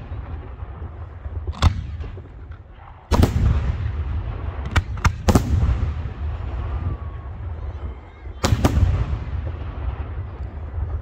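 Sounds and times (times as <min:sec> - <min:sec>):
continuous low rumble: 0:00.0 - 0:11.0.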